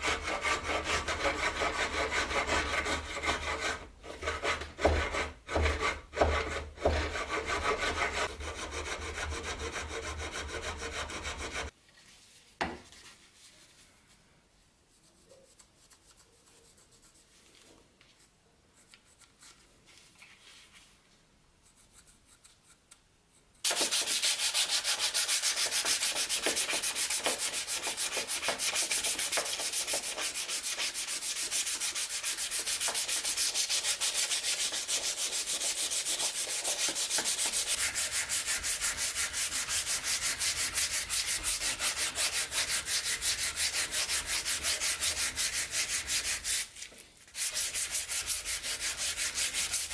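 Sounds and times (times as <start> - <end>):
sanding strokes: 0.0 - 11.7, 23.6 - 49.9.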